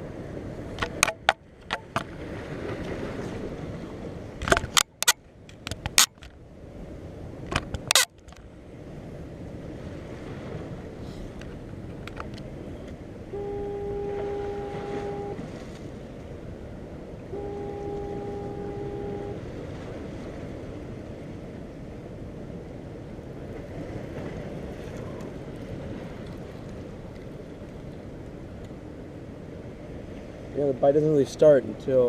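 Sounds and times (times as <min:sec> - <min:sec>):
surf and wind: 0:00.0 - 0:32.0
horn blasts: 0:13.2 - 0:15.8, 0:17.2 - 0:19.7.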